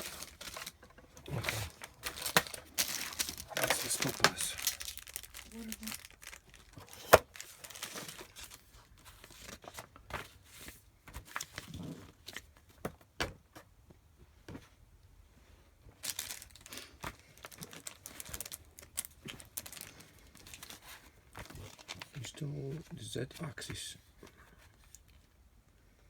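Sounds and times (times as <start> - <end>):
plastic packaging rustling: 0.0 - 12.5, 15.9 - 23.1.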